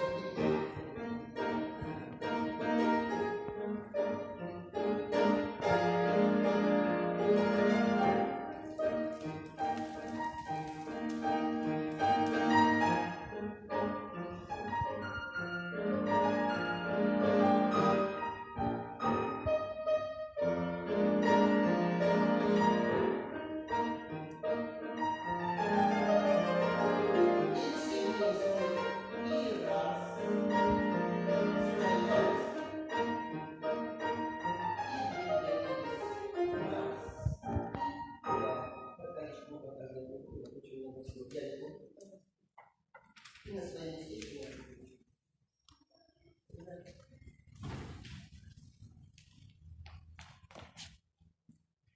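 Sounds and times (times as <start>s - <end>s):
classical piano music: 0.0s - 41.2s.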